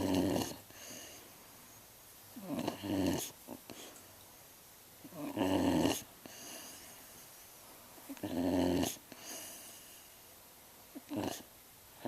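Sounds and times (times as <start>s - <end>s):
pet snoring and grunting: 0.0s - 0.8s, 2.4s - 3.7s, 5.1s - 6.5s, 8.1s - 9.6s, 11.0s - 11.5s.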